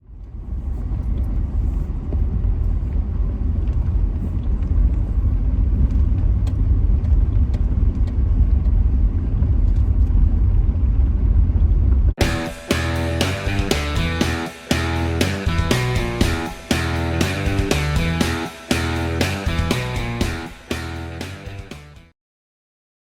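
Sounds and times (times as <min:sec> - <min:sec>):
car rumble inside cabin: 0:00.0 - 0:12.2.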